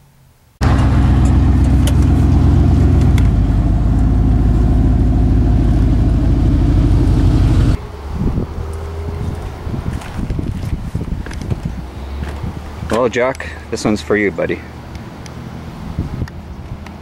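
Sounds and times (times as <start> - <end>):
pickup truck engine droning: 0.6 - 9.8.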